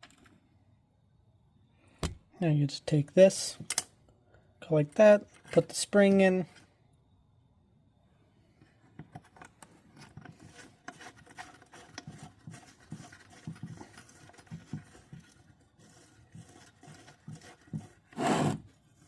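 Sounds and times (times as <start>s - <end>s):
small metal parts clicking: 3.7s - 3.9s.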